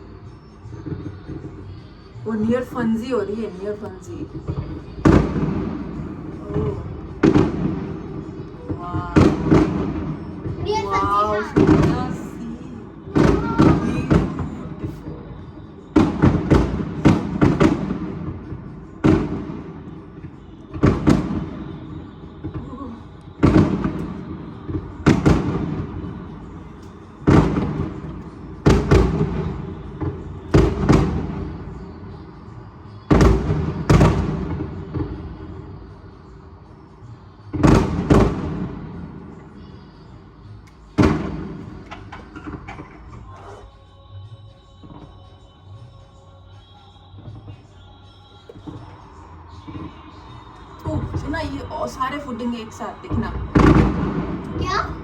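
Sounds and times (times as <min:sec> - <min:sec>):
fireworks banging: 0:02.4 - 0:32.2, 0:33.1 - 0:35.8, 0:37.5 - 0:39.5, 0:40.7 - 0:43.2, 0:48.5 - 0:55.0.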